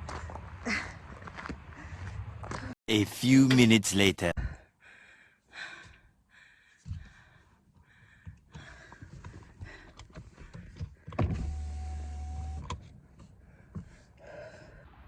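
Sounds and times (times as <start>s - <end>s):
power window motor humming: 11.3s - 12.8s.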